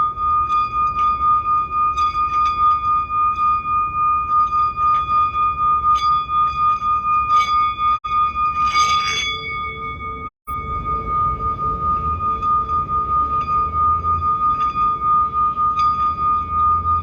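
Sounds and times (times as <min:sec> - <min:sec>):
singing bowl ringing: 0:00.0 - 0:17.0
lower pulsing tone: 0:09.6 - 0:17.0.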